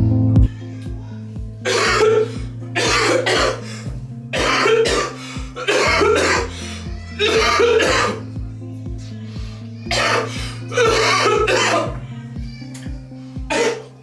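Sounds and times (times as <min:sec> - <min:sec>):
music with steady beat: 0:00.0 - 0:14.0
man coughing and hacking: 0:01.7 - 0:08.2, 0:09.9 - 0:12.0, 0:13.5 - 0:13.9.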